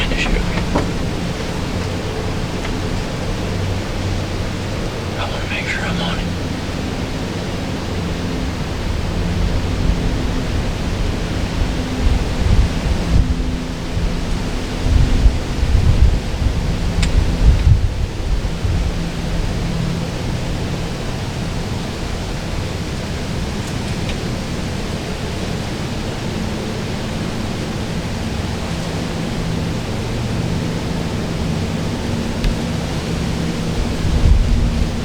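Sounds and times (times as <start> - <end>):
wind noise on microphone: 8.9 - 19.7, 31.6 - 35.0.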